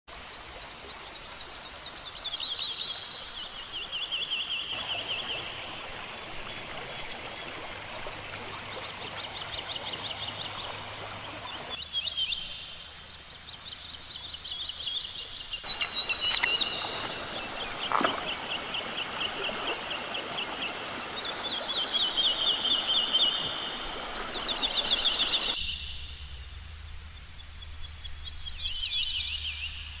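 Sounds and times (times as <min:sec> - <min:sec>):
chorus of high pulsing calls: 0:15.6 - 0:26.1.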